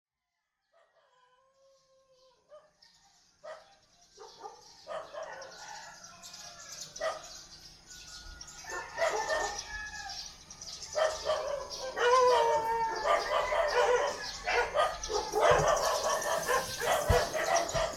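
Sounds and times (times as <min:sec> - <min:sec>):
dogs barking: 0:03.4 - 0:05.9, 0:07.0 - 0:07.4, 0:08.7 - 0:09.7, 0:10.8 - 0:17.9
roosters crowing: 0:05.1 - 0:07.0, 0:07.9 - 0:17.9.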